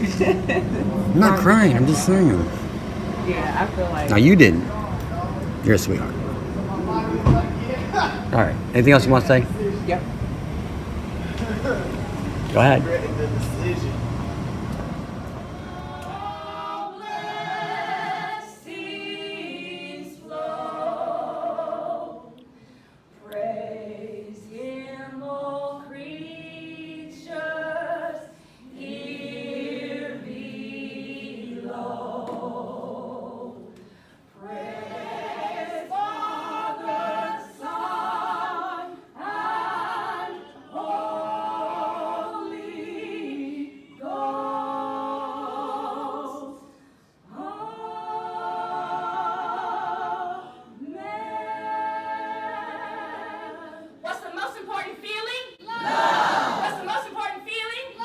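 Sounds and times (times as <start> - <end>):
unaccompanied choir singing: 0.0 - 54.6, 55.6 - 57.2
singers breathing: 22.5 - 23.2, 33.8 - 34.4.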